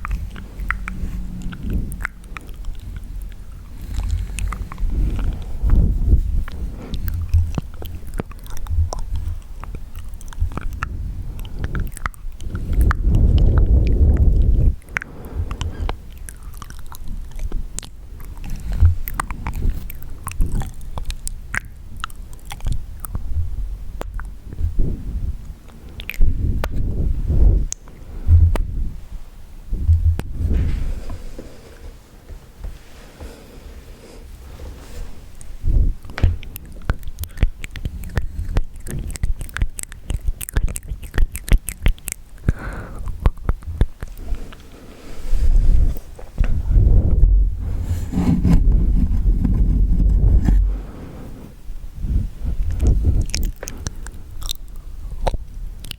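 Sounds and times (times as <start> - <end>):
wet mouth clicks and smacks: 0.0 - 23.3, 24.0 - 24.7, 25.7 - 28.7, 35.4 - 44.6, 52.5 - 55.9.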